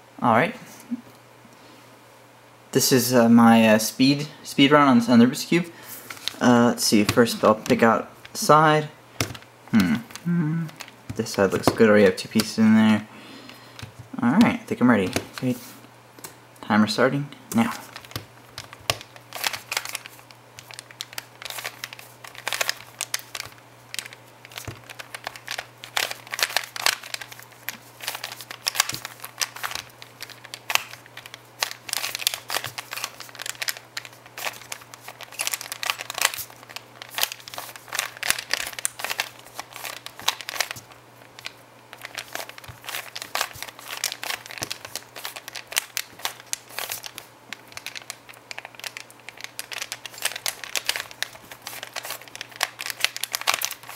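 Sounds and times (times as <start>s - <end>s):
puzzle cube plastic clicks: 17.5s - 53.9s.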